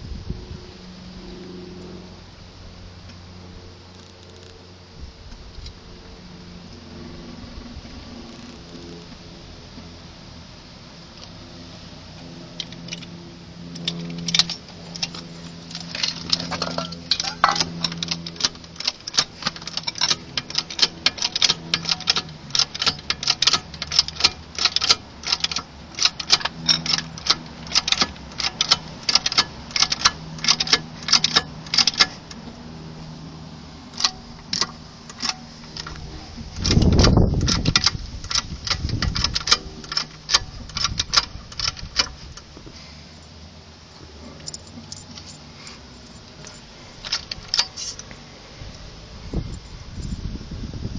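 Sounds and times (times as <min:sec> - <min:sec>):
shock absorber clicking: 0:13.8 - 0:32.5, 0:33.9 - 0:42.5.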